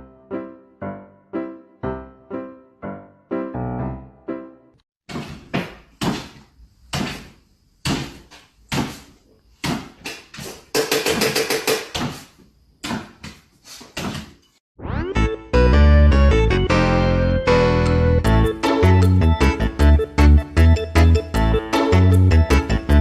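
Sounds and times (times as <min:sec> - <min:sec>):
sharp knocks: 0:05.1 - 0:12.2.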